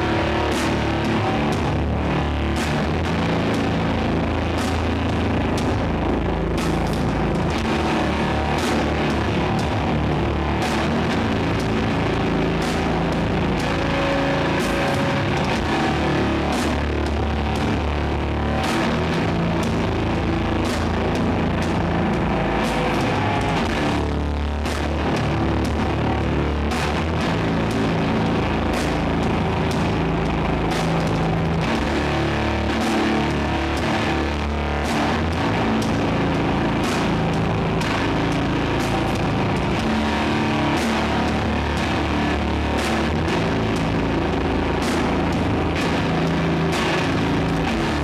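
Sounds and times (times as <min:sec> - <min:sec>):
metal band playing live: 0:00.0 - 0:48.0.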